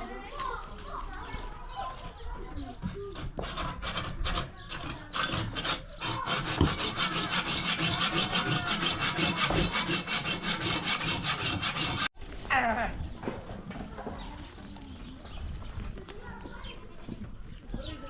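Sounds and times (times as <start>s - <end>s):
rapid rhythmic rasping strokes: 2.9s - 12.1s.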